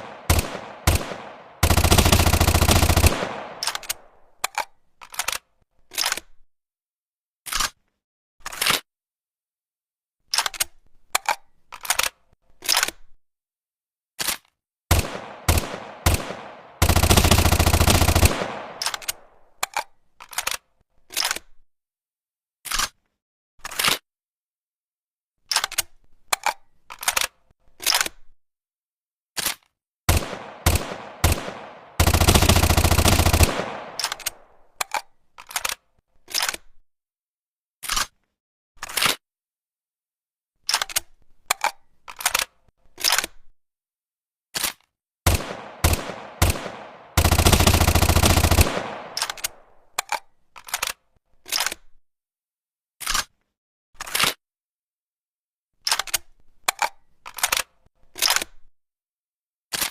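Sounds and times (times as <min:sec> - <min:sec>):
single gunshots: 0:00.0 - 0:04.2, 0:14.9 - 0:19.4, 0:30.1 - 0:34.6, 0:45.3 - 0:49.7
automatic gunfire bursts: 0:00.0 - 0:04.3, 0:14.9 - 0:19.4, 0:30.1 - 0:34.7, 0:45.3 - 0:49.8.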